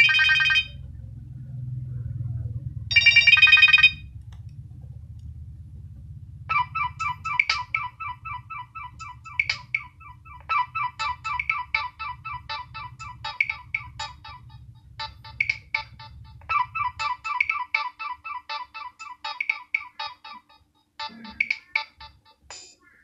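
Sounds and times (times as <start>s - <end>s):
mobile phone ringtone melody: 0.0s - 0.8s, 2.9s - 4.0s, 6.5s - 22.8s.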